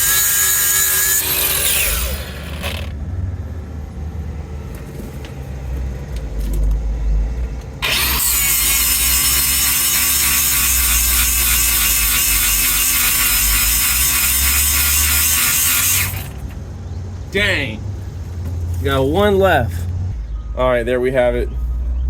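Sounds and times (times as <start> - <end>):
power grinder grinding steel: 0.0 - 2.9, 7.8 - 16.4.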